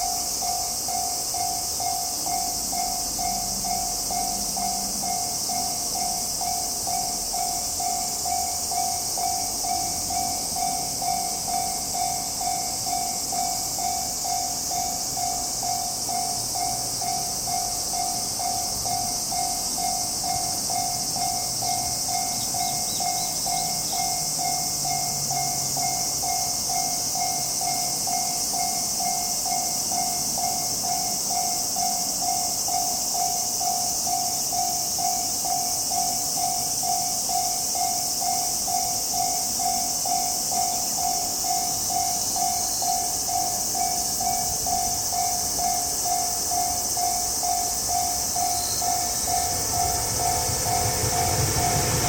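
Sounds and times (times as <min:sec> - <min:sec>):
high-pitched hiss: 0:00.0 - 0:52.0
level crossing warning bell: 0:00.0 - 0:52.0.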